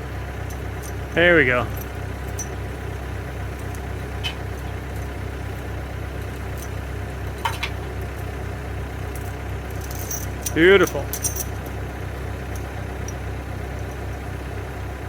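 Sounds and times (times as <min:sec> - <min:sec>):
heavy equipment engine idling: 0:00.0 - 0:15.0.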